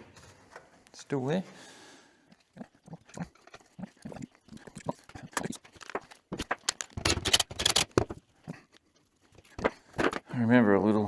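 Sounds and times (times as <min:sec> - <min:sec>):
hand tools and metal parts clattering: 0:05.2 - 0:08.2, 0:09.6 - 0:10.2.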